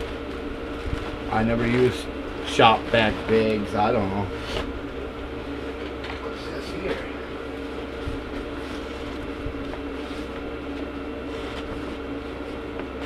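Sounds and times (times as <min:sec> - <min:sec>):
two-tone mechanical hum: 0:00.0 - 0:13.0.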